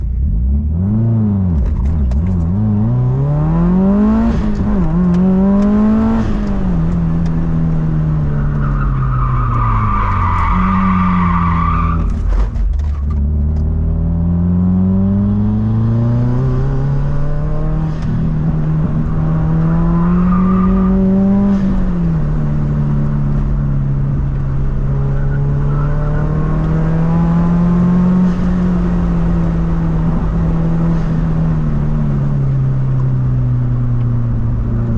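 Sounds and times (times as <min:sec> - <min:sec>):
car engine revving hard: 0:02.4 - 0:08.6, 0:13.3 - 0:32.8.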